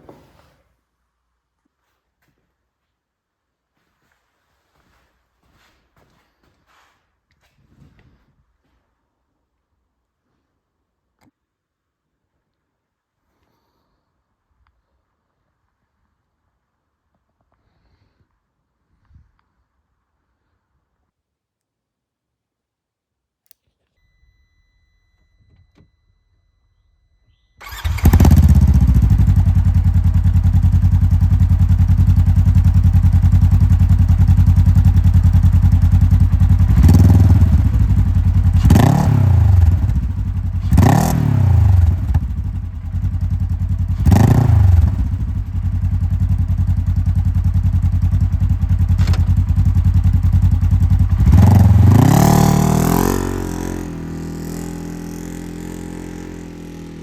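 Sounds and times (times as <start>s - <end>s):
engine starting and idling: 27.6s - 52.3s
engine revving: 27.6s - 57.0s.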